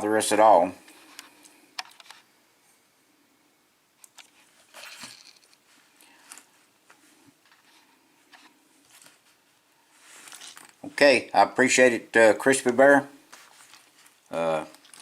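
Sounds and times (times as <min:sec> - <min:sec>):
soft rustling: 0:04.2 - 0:11.0, 0:13.2 - 0:15.0.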